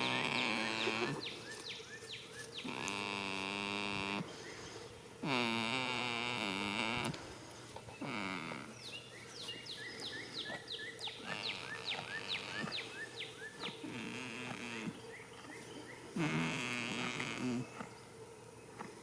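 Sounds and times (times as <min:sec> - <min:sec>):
goat snoring: 0:00.0 - 0:01.5, 0:02.6 - 0:08.9, 0:10.4 - 0:18.0
small bird chirping: 0:07.9 - 0:18.1.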